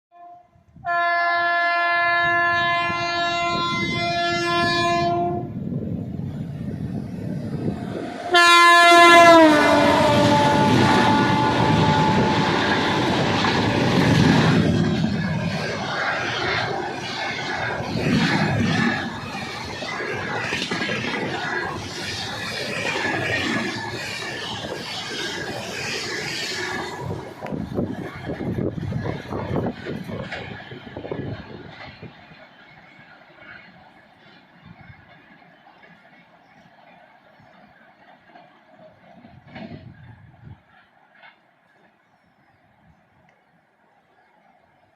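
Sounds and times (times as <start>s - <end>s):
locomotive horn blasts: 0.1s - 5.5s, 8.2s - 13.2s
train rumble and wheel clatter: 0.2s - 44.9s.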